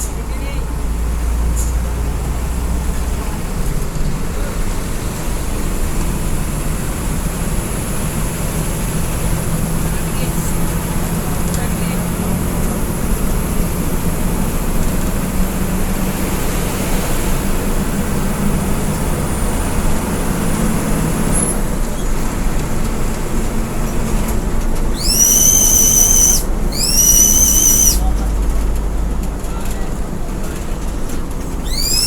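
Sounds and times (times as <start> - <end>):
bus engine hum and road roar: 0.0 - 32.0
loud high-pitched tones: 25.0 - 28.0, 31.6 - 32.0.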